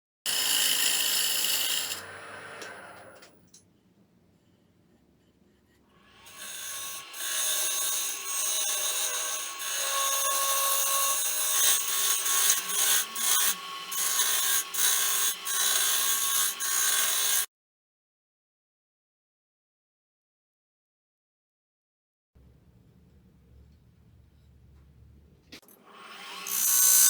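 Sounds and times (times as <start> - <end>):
lathe tool scraping wood: 0.3 - 3.3, 25.9 - 27.0
wood lathe humming: 0.4 - 3.4, 25.9 - 27.0.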